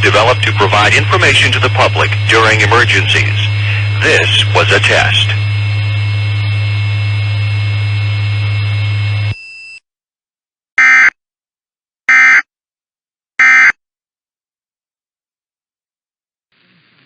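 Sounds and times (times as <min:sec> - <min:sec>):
steady low hum: 0:00.0 - 0:09.4.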